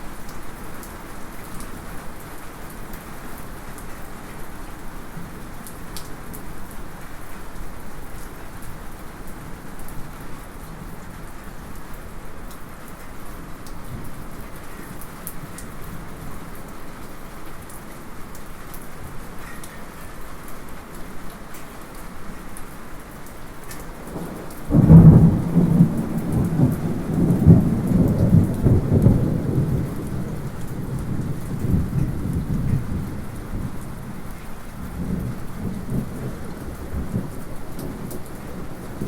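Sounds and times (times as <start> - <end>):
steady light rain: 0.0 - 39.0
distant thunder rumbling: 24.0 - 39.0.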